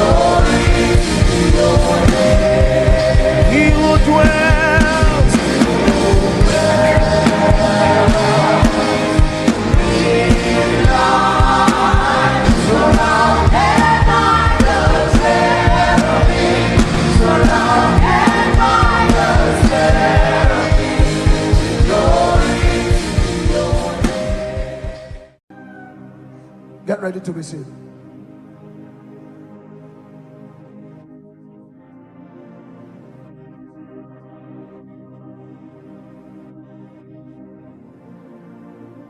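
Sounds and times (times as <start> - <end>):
band with drum beat: 0.0 - 25.3
voices singing gospel: 0.0 - 25.4.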